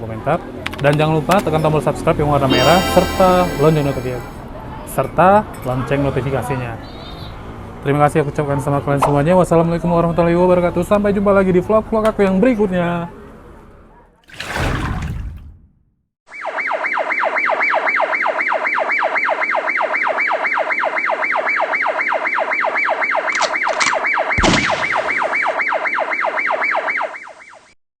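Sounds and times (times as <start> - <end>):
fast warbling siren: 2.5 - 4.4
short burst of noise: 2.5 - 4.4.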